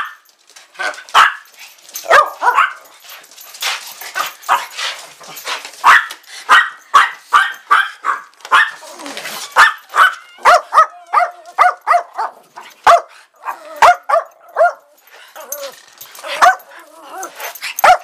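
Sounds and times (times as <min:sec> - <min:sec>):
dogs barking sharply: 0:00.8 - 0:03.0, 0:05.8 - 0:15.0, 0:16.2 - 0:16.7, 0:17.6 - 0:18.0.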